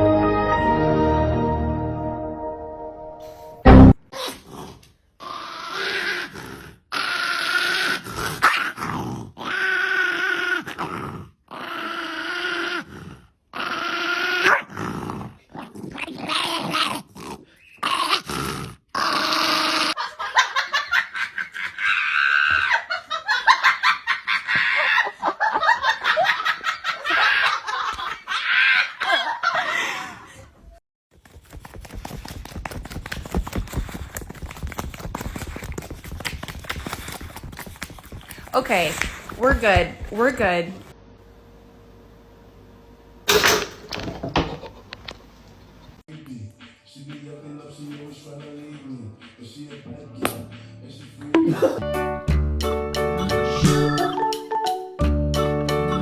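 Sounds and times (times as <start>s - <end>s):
dogs barking whining and growling: 4.2s - 20.0s, 21.1s - 23.1s.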